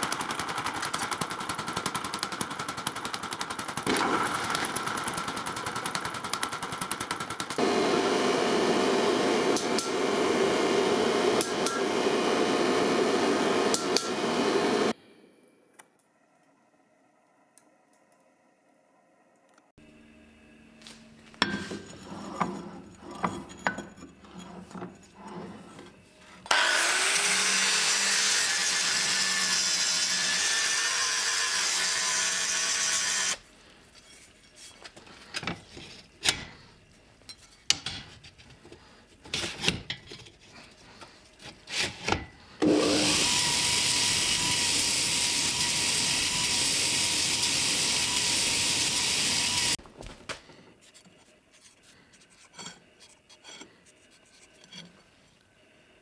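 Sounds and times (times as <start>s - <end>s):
power tool running: 7.4s - 15.0s, 26.4s - 33.4s, 42.6s - 49.8s
workpieces knocking and clattering: 21.4s - 25.1s.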